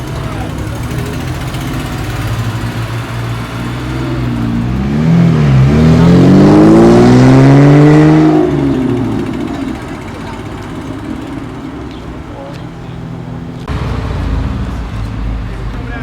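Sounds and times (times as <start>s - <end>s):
car engine accelerating: 0.0s - 16.0s
low engine rumble: 0.0s - 16.0s.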